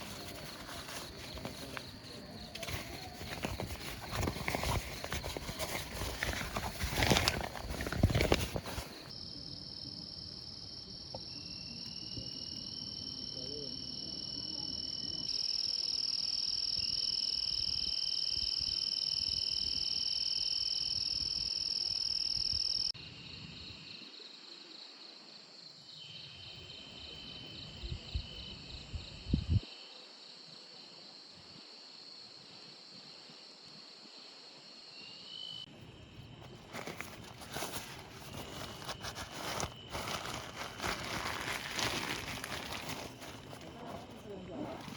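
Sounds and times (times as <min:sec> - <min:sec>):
rustling and knocking: 0:00.0 - 0:09.1, 0:36.5 - 0:44.9
insects trilling: 0:34.9 - 0:44.9.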